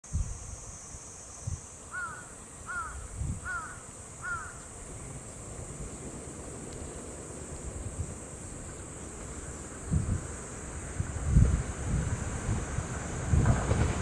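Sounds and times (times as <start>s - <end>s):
wind rumble on microphone: 0.0s - 0.7s, 2.7s - 14.0s
high insect-like hiss: 0.0s - 14.0s
crow cawing: 1.9s - 4.6s.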